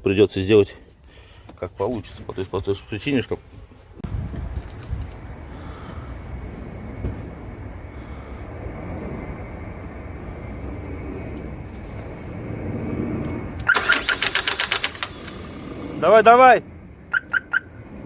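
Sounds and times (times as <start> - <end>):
engine rumbling: 0.0 - 18.0
loud fast clatter: 13.7 - 16.2.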